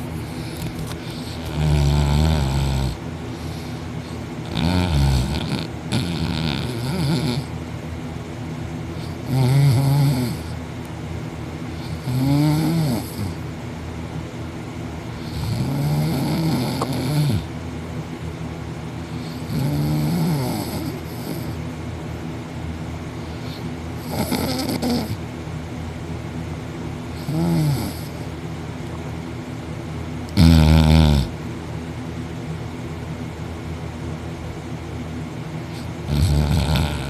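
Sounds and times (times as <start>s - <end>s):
person snoring loudly: 1.2s - 3.6s, 4.4s - 7.5s, 9.0s - 10.6s, 11.8s - 13.4s, 15.2s - 17.5s, 19.3s - 21.5s, 24.0s - 25.2s, 27.2s - 28.2s, 30.4s - 31.3s, 35.8s - 37.0s.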